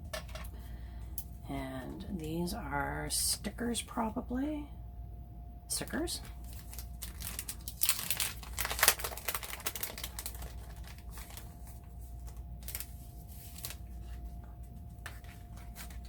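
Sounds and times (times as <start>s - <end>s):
packaging crinkling and rustling: 6.2s - 16.0s.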